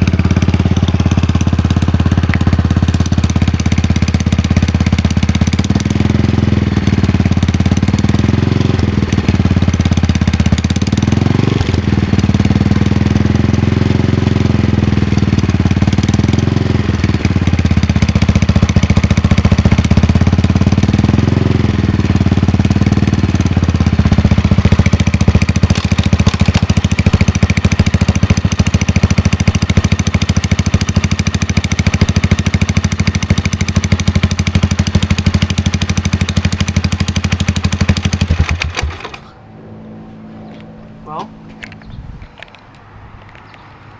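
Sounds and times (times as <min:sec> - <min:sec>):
rapid engine clicking: 0:00.0 - 0:39.4
engine idling: 0:00.0 - 0:42.8.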